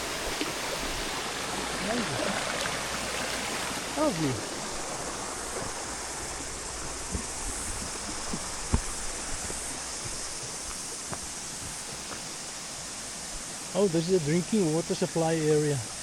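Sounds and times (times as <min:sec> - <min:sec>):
stream rushing: 0:00.0 - 0:16.0
light knocks: 0:06.4 - 0:12.2.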